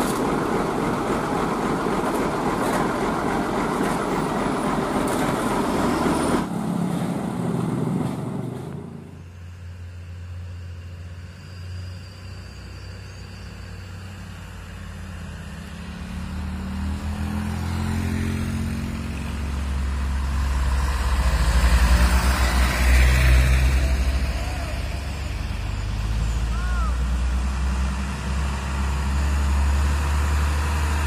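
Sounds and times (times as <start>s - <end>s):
vehicle engine revving: 15.6s - 31.0s.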